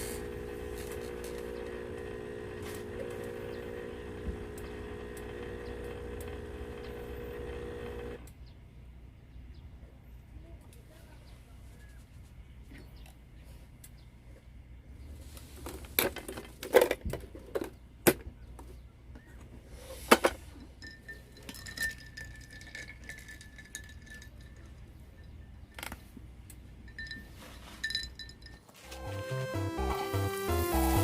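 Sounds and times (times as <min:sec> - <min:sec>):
cups and dishes clinking: 0:20.3 - 0:25.6, 0:26.9 - 0:28.9
music: 0:28.8 - 0:31.0.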